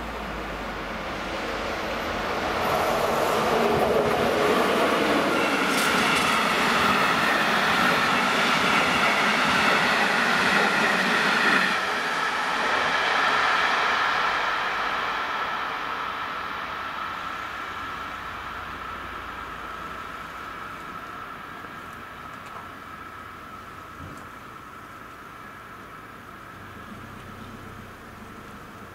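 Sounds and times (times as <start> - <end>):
train wheels rumbling on rails: 0.0 - 28.9.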